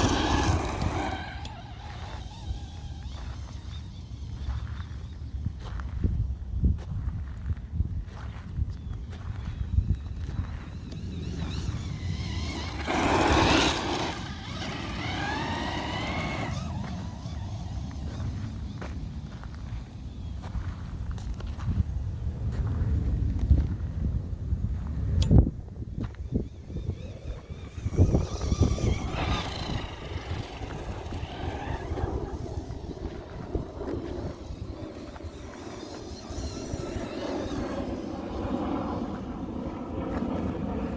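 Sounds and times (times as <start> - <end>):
toy truck electric motor whining: 0.0 - 5.5, 9.4 - 20.3, 25.9 - 39.2
wind buffeting microphone: 0.0 - 40.9.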